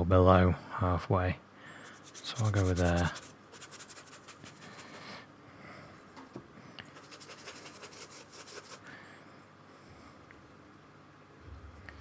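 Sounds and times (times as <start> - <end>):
paintbrush scratching on paper: 1.8 - 5.1, 7.0 - 8.8.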